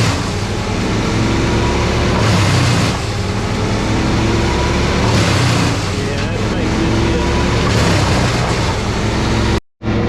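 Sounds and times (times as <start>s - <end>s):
engine humming under load: 0.0s - 10.0s.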